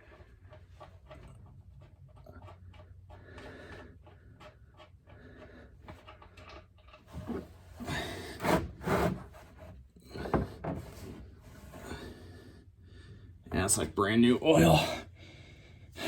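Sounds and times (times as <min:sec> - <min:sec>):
hand work rubbing and clicking: 0:00.0 - 0:11.8
scrapes and knocks: 0:00.0 - 0:12.2.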